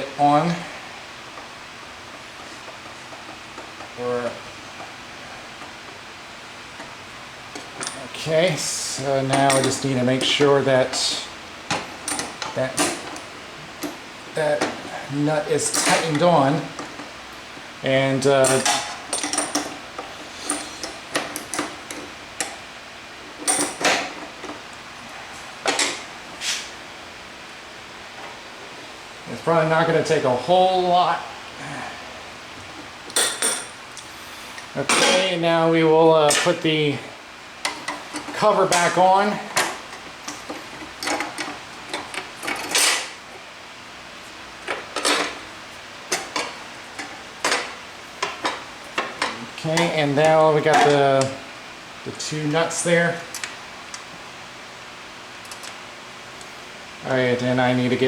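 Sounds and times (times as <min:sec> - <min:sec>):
metal parts clinking: 0:41.0 - 0:43.1.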